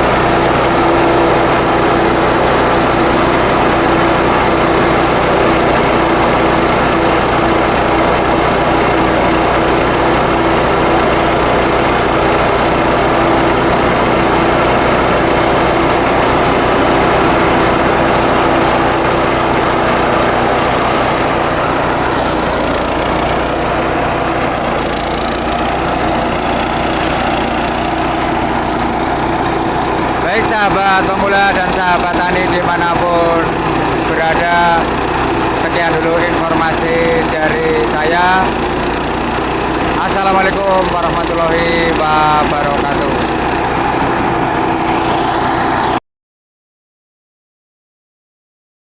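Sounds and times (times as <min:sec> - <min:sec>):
rice thresher running: 0:00.0 - 0:46.0.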